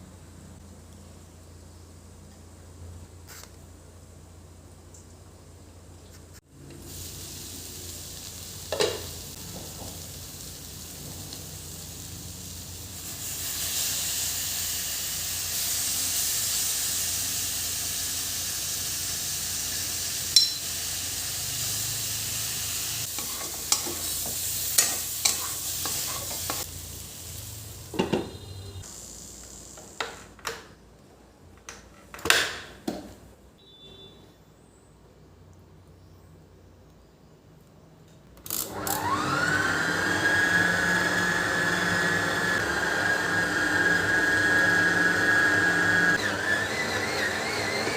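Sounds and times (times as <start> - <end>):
food sizzling in a pan: 6.6 - 30.0.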